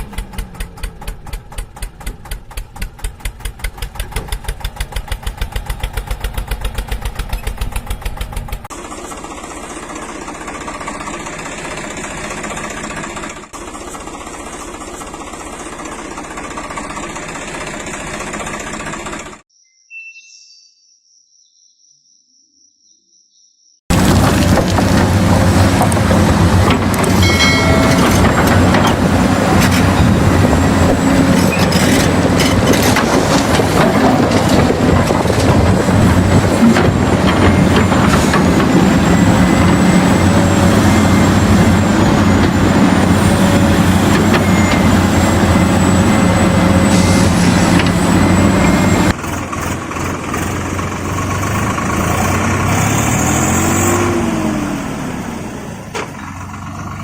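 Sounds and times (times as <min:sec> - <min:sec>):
heavy diesel engines under load: 0:00.0 - 0:19.5, 0:23.9 - 0:57.0
engine revving: 0:23.9 - 0:57.0.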